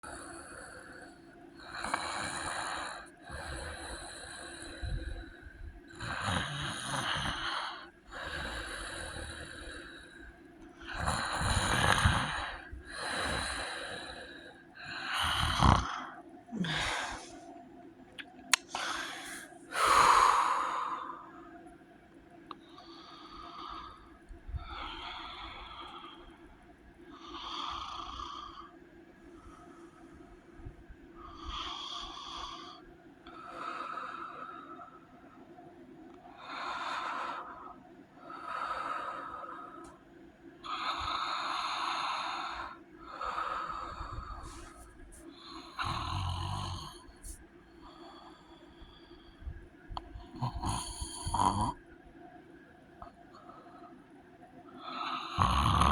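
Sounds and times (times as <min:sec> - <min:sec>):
heavy snoring: 0:01.6 - 0:05.2, 0:05.9 - 0:09.9, 0:10.8 - 0:14.2, 0:14.8 - 0:17.3, 0:40.6 - 0:47.4, 0:50.2 - 0:51.8, 0:54.8 - 0:55.9.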